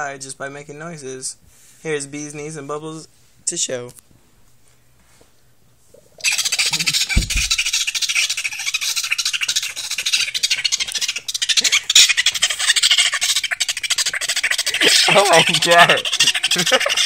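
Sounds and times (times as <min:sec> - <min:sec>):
people making raspy mouth noises: 0:06.2 - 0:17.0.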